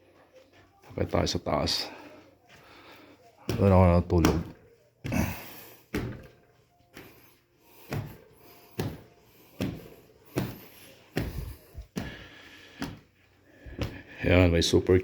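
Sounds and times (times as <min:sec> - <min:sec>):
footsteps climbing stairs: 0:03.4 - 0:14.2.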